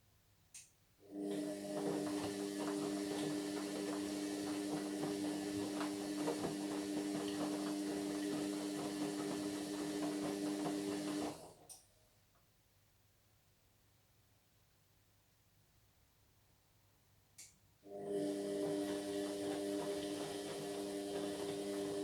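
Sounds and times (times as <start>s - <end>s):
washing machine running: 1.1s - 11.6s, 17.9s - 22.0s.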